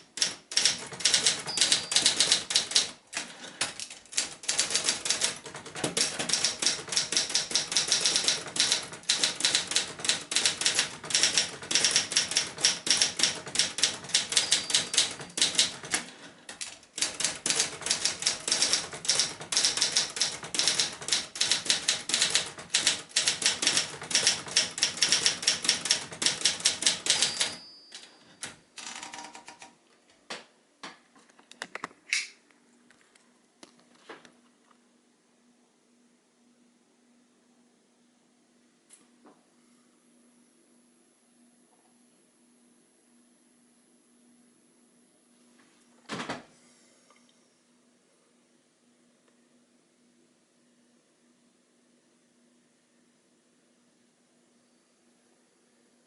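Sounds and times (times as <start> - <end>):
typewriter clicks: 0.0 - 29.8
typewriter keystrokes: 0.0 - 29.8
typewriter bell ring: 0.2 - 2.9, 4.5 - 16.0, 17.0 - 29.6.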